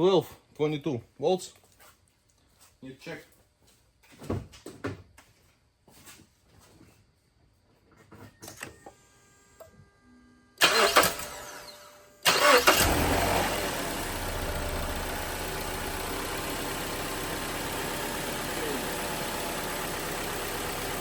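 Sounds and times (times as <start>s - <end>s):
car engine cranking and starting: 10.6s - 21.0s
car engine idling: 12.3s - 21.0s.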